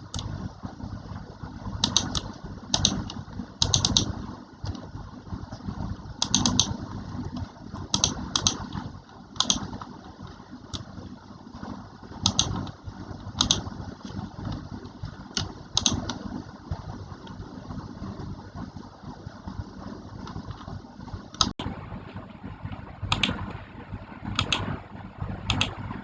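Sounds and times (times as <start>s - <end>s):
computer keyboard typing: 0.0s - 0.5s, 1.7s - 11.2s, 12.1s - 17.8s, 20.1s - 21.7s, 22.7s - 23.6s, 24.3s - 26.0s
steady low rumble: 0.0s - 26.0s.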